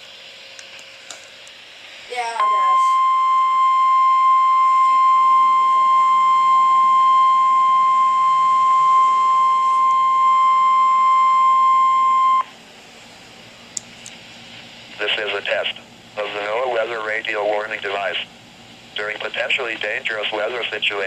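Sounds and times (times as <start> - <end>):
steady high alarm tone: 2.1 - 12.5.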